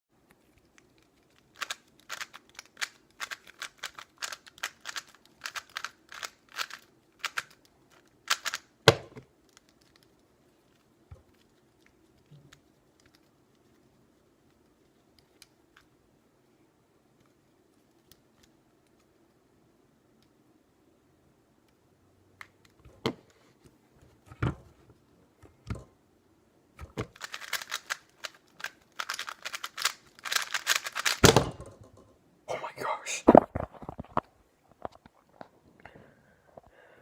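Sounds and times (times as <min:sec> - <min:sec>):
puzzle cube clicking: 0:00.5 - 0:10.3, 0:26.8 - 0:31.4.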